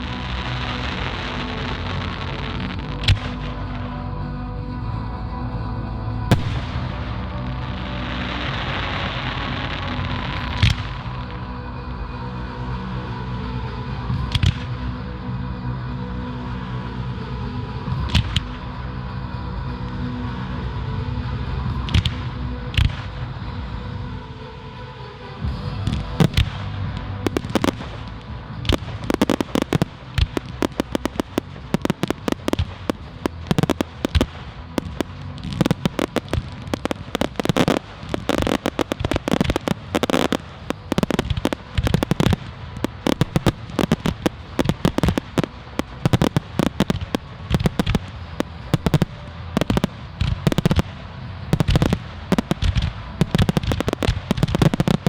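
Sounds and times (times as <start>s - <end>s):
fireworks bangs and crackles: 0.0s - 4.0s, 6.3s - 11.4s, 14.1s - 14.8s, 17.9s - 18.8s, 21.6s - 23.4s, 25.4s - 55.0s.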